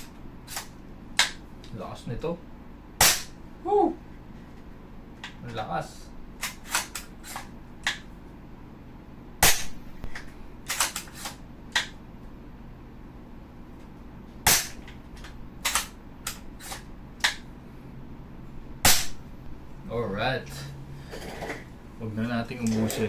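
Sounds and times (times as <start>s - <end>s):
airsoft rifle shot snap: 3.0s - 3.4s, 9.4s - 9.8s, 14.5s - 14.9s, 18.9s - 19.2s.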